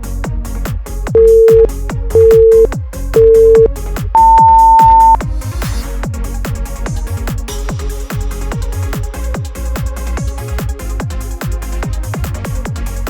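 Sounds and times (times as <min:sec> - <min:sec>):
electronic dance music: 0:01.2 - 0:05.2
long high beep: 0:01.2 - 0:05.2
short timer beeps: 0:01.2 - 0:05.2.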